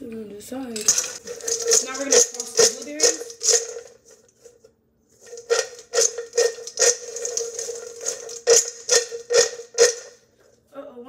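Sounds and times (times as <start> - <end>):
blueberries rattling in container: 0.8 - 4.2, 5.2 - 10.2.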